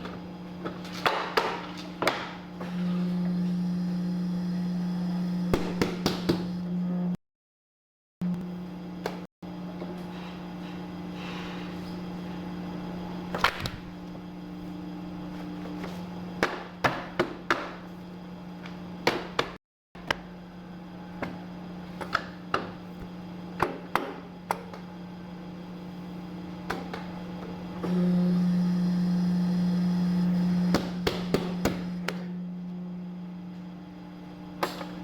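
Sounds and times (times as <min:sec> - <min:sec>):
paper cutter motor humming: 0:02.6 - 0:07.2, 0:27.6 - 0:34.6.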